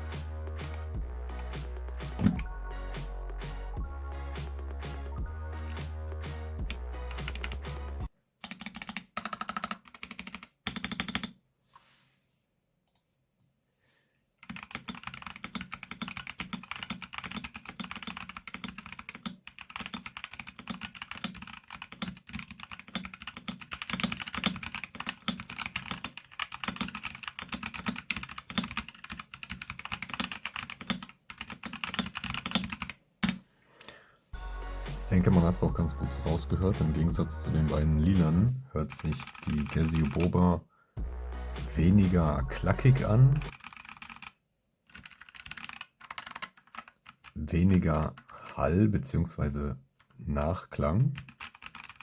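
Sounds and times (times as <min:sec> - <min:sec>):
mechanical keyboard typing: 0:06.7 - 0:07.7, 0:08.4 - 0:11.3, 0:14.4 - 0:33.4, 0:39.0 - 0:40.3, 0:43.0 - 0:44.3, 0:44.9 - 0:47.4, 0:51.2 - 0:52.0.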